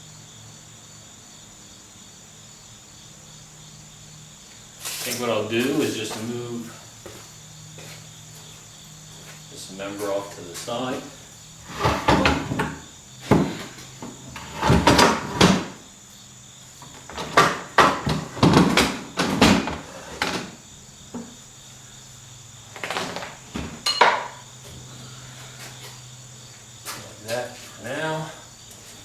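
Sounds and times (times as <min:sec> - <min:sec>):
metal clunks and scrapes: 0:11.6 - 0:15.8, 0:16.8 - 0:20.6.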